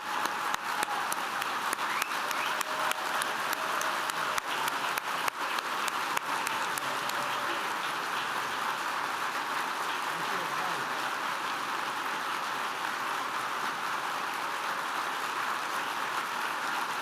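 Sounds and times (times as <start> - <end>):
audience applauding: 0.0 - 17.0.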